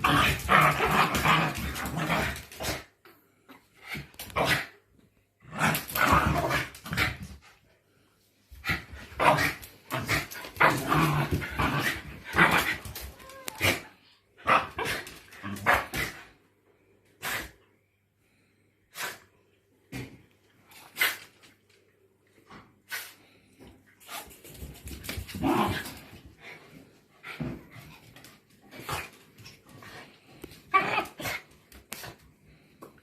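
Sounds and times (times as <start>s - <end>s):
dogs barking and growling: 0.0s - 3.0s, 8.6s - 16.4s, 30.1s - 31.6s.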